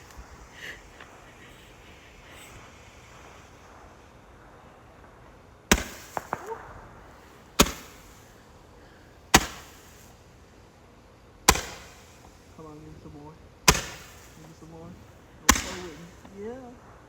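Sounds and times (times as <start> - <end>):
firework bangs with echo: 0.0 - 8.5, 9.3 - 10.3, 11.5 - 12.6, 13.6 - 16.8
small pops: 5.2 - 6.8.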